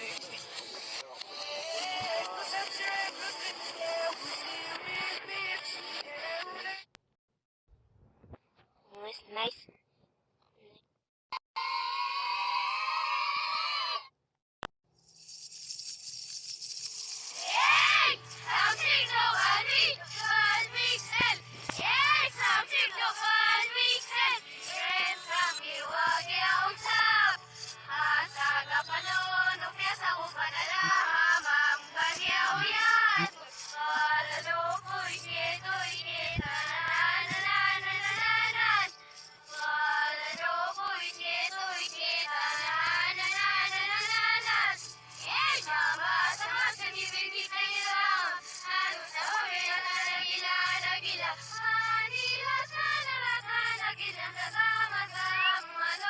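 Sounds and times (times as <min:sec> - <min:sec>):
music: 0:00.0 - 0:06.9, 0:16.9 - 0:56.0
children cheering: 0:11.6 - 0:14.1, 0:17.4 - 0:18.9.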